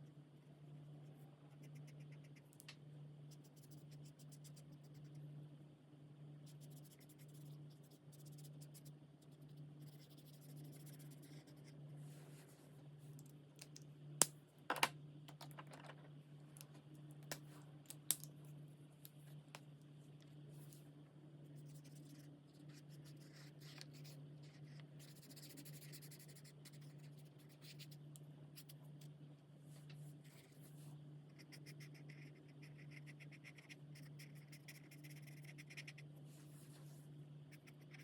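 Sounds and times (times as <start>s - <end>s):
steady low hum: 0.0s - 38.0s
marker nibs rubbing on paper: 6.5s - 11.7s, 21.6s - 28.0s, 31.4s - 36.0s.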